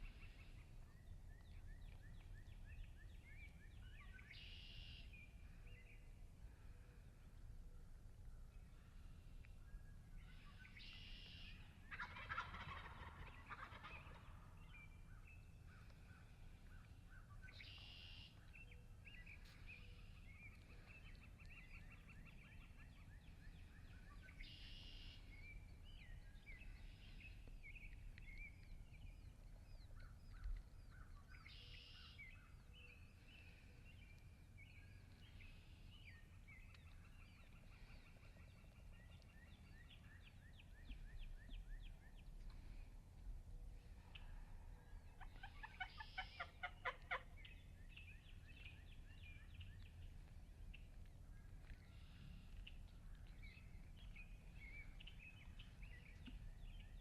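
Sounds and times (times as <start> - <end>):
songbirds chirping and trilling: 0.0 - 57.0
wild turkey gobbling: 11.0 - 14.9, 45.1 - 47.6.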